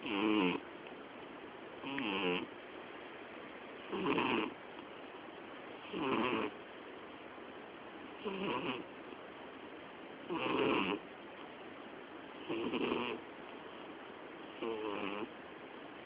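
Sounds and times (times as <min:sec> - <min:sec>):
cat snoring: 0:00.0 - 0:00.6, 0:01.8 - 0:02.5, 0:03.9 - 0:04.6, 0:05.8 - 0:06.6, 0:08.2 - 0:08.9, 0:10.3 - 0:11.0, 0:12.4 - 0:13.2, 0:14.6 - 0:15.3.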